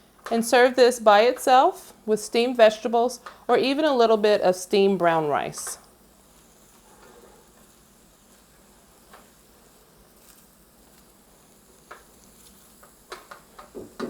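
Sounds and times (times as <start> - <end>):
food sizzling in a pan: 0.4 - 14.0.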